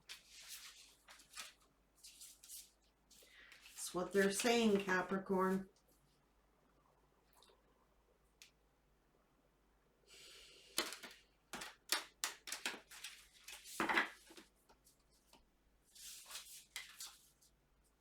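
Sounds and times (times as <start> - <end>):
cards snapping and clicking: 10.8 - 13.1.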